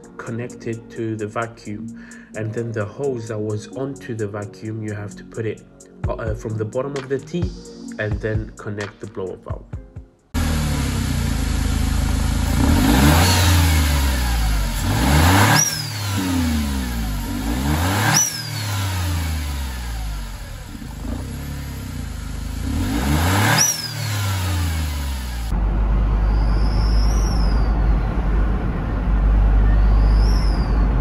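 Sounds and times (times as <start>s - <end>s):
car engine revving: 10.4s - 31.0s.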